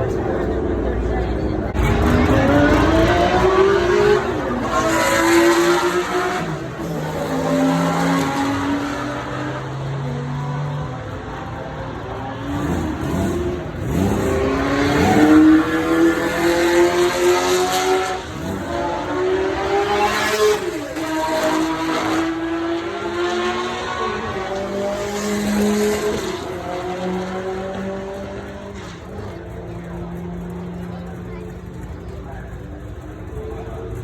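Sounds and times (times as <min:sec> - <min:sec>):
car engines revving: 0:00.0 - 0:34.0
cars sweeping past: 0:11.8 - 0:30.7.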